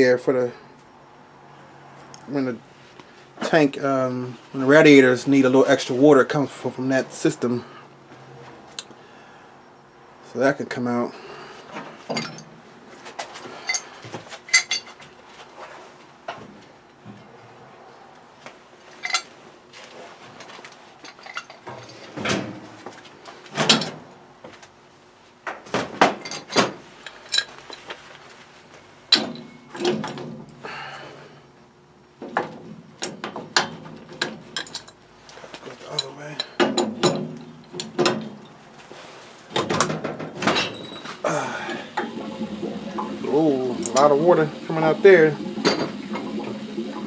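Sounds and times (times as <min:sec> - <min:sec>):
metal pipe fittings clanking: 0:12.1 - 0:12.5, 0:13.6 - 0:13.9, 0:14.5 - 0:15.0, 0:19.0 - 0:19.3, 0:21.0 - 0:22.2, 0:35.7 - 0:38.6, 0:39.8 - 0:46.5.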